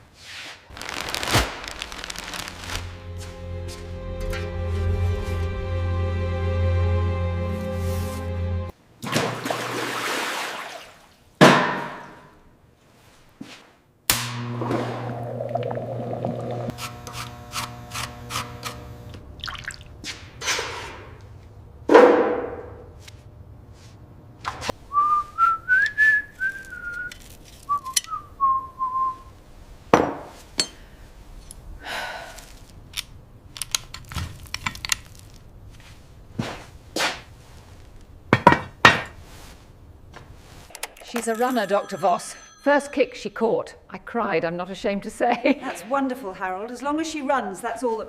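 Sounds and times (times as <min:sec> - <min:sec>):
whooshing: 0:00.7 - 0:03.2
person whistling a tune: 0:24.9 - 0:29.3
metal clinks and knocks: 0:40.8 - 0:43.1.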